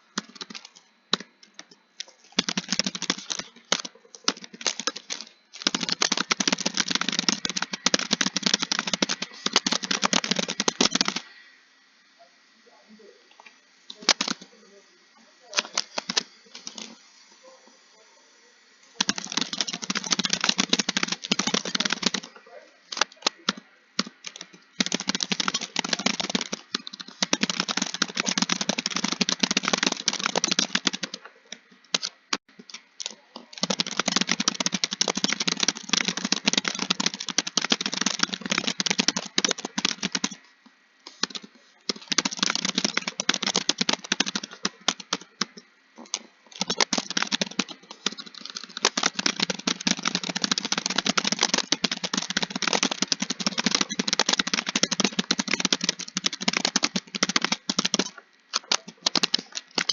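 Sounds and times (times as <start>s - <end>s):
keyboard typing clicks: 0.0s - 11.3s, 19.0s - 22.3s, 22.9s - 31.3s, 31.9s - 40.4s, 41.1s - 59.9s.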